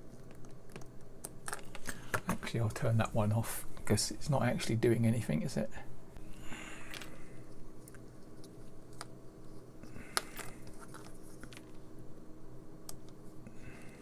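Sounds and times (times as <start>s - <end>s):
faint electrical hum: 0.0s - 14.0s
small parts and tools clicking: 6.8s - 11.8s.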